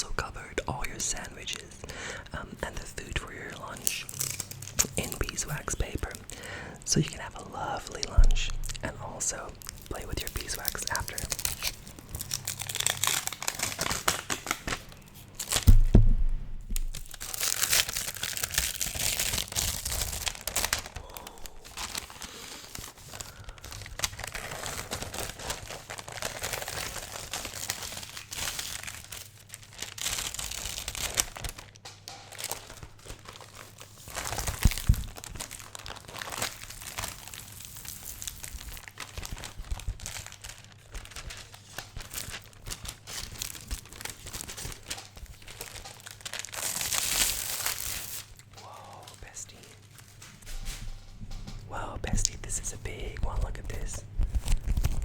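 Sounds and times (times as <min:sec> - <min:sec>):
wax wraps crinkling: 0:01.0 - 0:55.0
low thumps: 0:08.2 - 0:08.8, 0:15.7 - 0:17.0.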